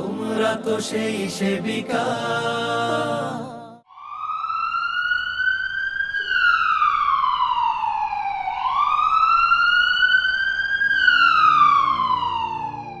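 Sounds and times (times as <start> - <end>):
low steady music: 0.0 - 3.8
wail siren: 3.9 - 13.0.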